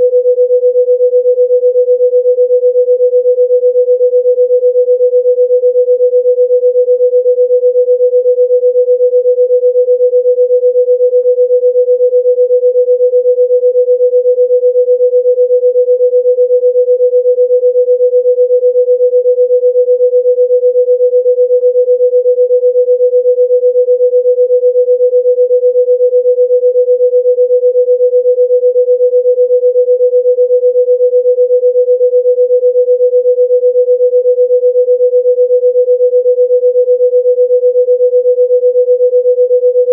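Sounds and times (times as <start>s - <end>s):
pure electronic tone: 0.0s - 3.0s, 36.7s - 39.9s.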